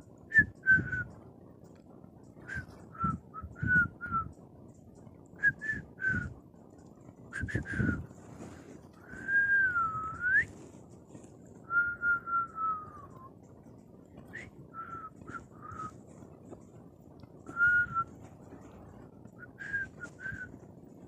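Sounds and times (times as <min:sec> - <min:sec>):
person whistling: 0:00.3 - 0:01.1, 0:02.4 - 0:04.3, 0:05.4 - 0:06.4, 0:07.3 - 0:08.1, 0:09.0 - 0:10.6, 0:11.6 - 0:13.4, 0:14.2 - 0:16.0, 0:17.5 - 0:18.2, 0:19.4 - 0:20.6.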